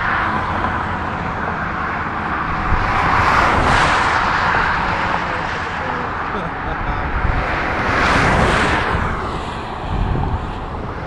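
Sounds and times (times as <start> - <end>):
roadside traffic noise: 0.0 - 11.0
vehicle passing: 0.0 - 11.0.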